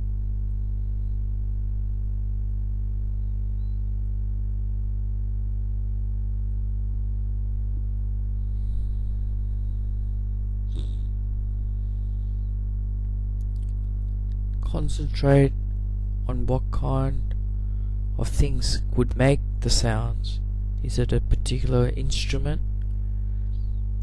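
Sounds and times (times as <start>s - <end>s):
low electronic drone: 6.5s - 24.0s.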